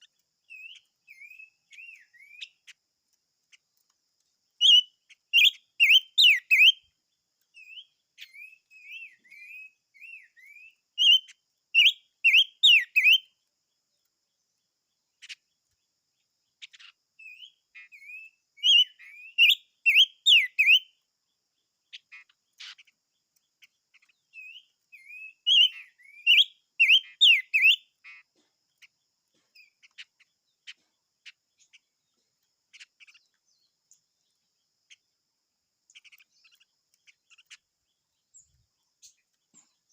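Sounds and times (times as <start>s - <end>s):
sharp bird clicks: 0.0s - 13.2s, 15.2s - 15.9s, 16.6s - 20.7s, 21.9s - 34.0s, 35.9s - 37.7s
songbird warbling whistles: 0.6s - 2.6s, 4.6s - 6.8s, 7.6s - 13.3s, 17.2s - 20.9s, 24.4s - 27.9s.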